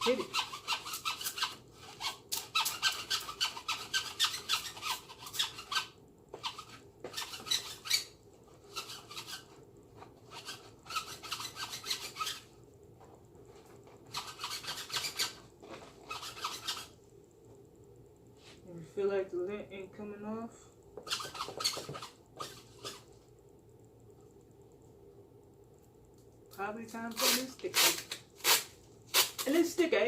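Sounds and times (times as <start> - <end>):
lint roller rasping over hat: 0.0 - 12.5, 13.6 - 17.0.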